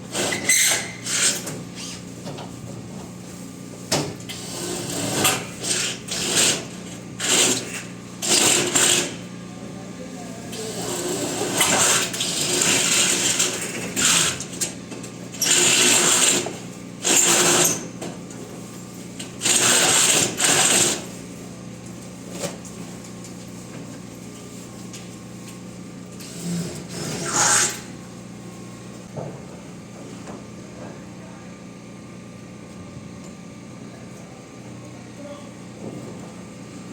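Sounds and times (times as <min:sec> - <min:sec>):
power tool bursts: 0:04.3 - 0:09.2, 0:10.7 - 0:14.6, 0:15.3 - 0:17.9, 0:19.4 - 0:21.1, 0:26.2 - 0:27.9.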